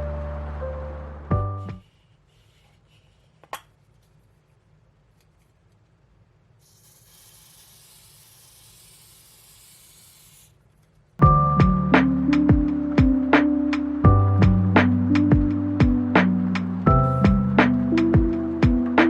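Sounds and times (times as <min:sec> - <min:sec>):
quiet hiss: 0:00.4 - 0:11.2.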